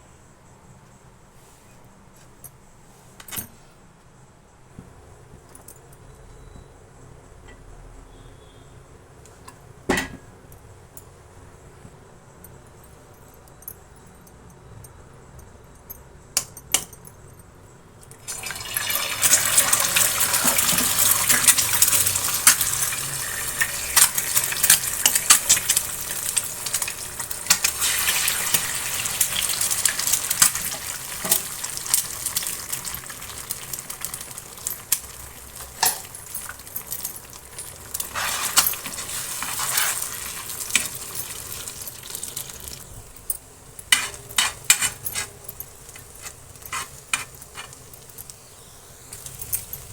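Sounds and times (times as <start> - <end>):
food sizzling in a pan: 18.2 - 49.9.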